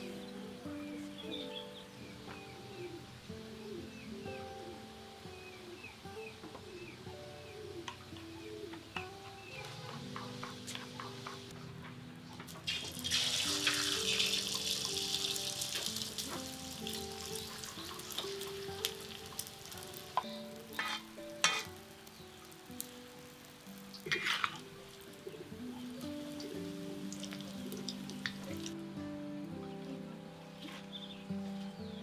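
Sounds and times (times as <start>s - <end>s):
food sizzling in hot oil: 12.6s - 28.7s.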